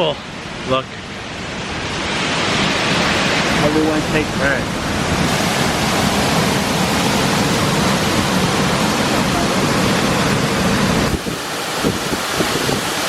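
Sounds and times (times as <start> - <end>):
waterfall rushing: 0.0 - 13.0.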